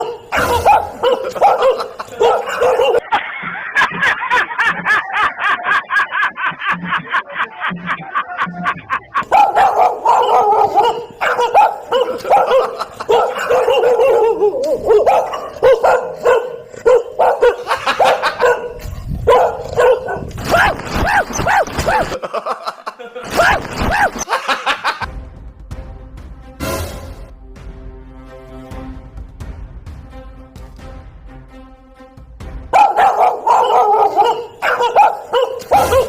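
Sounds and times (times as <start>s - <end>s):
dog barking and yipping: 0.0s - 3.0s, 9.2s - 22.2s, 23.3s - 24.3s, 32.7s - 36.0s.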